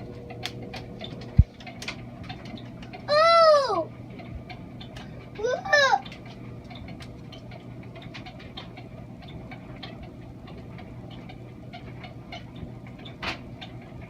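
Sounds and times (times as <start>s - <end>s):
washing machine drum humming: 0.0s - 14.0s.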